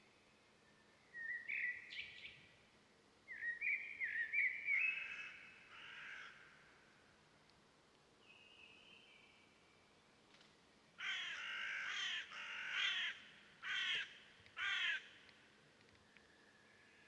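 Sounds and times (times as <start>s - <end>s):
bird cawing harshly: 5.1s - 6.4s, 11.0s - 15.1s.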